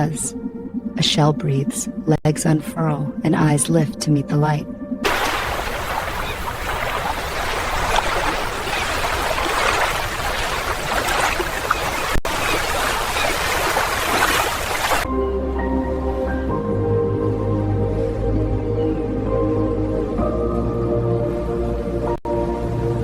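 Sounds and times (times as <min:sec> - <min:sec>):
soft music: 0:00.0 - 0:05.4, 0:15.1 - 0:23.0
water trickling over rocks: 0:05.1 - 0:15.1.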